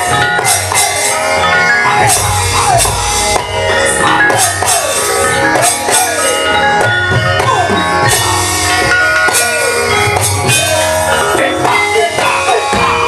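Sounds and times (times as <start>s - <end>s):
drum strokes: 0.0s - 13.0s
metallophones ringing: 0.0s - 13.0s.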